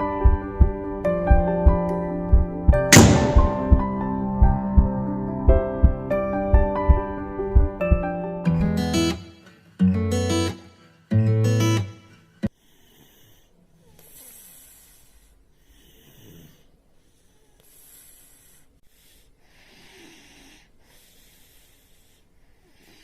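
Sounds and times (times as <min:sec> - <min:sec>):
child snoring faintly: 0:12.4 - 0:23.0.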